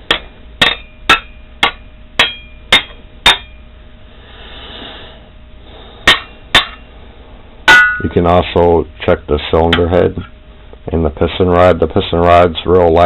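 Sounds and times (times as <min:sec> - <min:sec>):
steel rod tapping on metal: 0:00.0 - 0:03.6, 0:06.1 - 0:06.8, 0:07.7 - 0:08.2.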